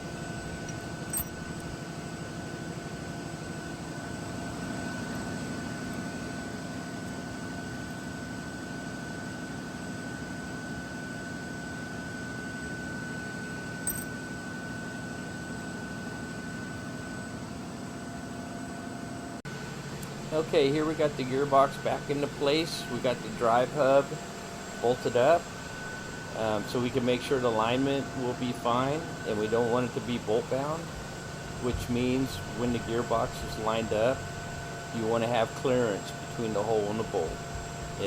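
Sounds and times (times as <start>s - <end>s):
machine hum: 13.6s - 14.1s.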